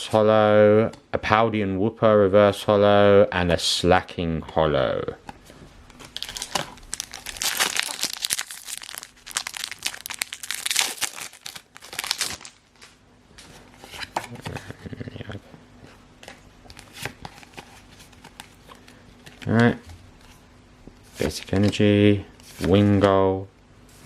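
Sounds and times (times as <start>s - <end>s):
foil wrapper tearing and crinkling: 6.0s - 13.0s
cards rustling and clicking: 16.2s - 20.4s.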